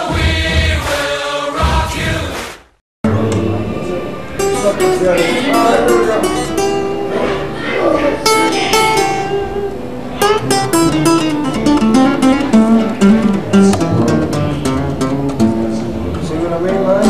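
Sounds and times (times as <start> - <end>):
guitar picking and strumming: 3.1 - 17.0.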